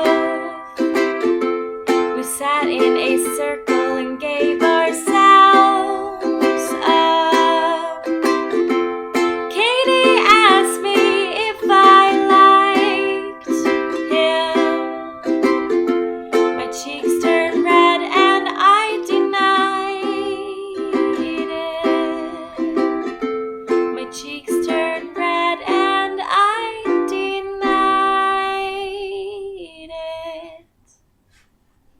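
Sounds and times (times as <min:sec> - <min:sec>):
ukulele strummed chords: 0:00.0 - 0:29.4.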